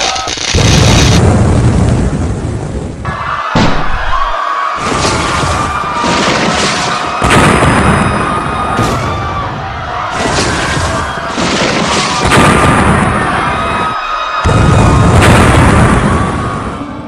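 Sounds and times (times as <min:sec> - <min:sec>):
loud booms: 0:00.5 - 0:04.2, 0:04.8 - 0:16.9.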